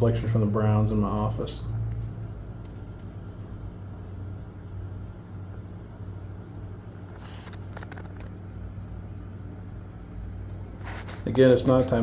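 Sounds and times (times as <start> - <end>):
faint rustle: 7.0 - 8.4, 10.5 - 12.0.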